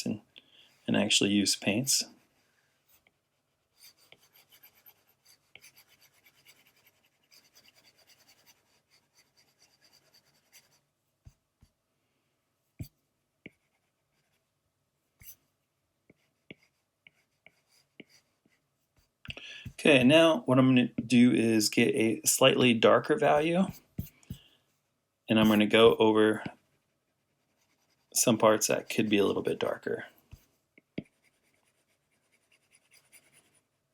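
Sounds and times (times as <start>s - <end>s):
stylus scratching on a tablet: 2.9s - 11.7s, 12.8s - 14.5s, 16.1s - 20.1s, 23.0s - 24.4s, 25.3s - 33.8s.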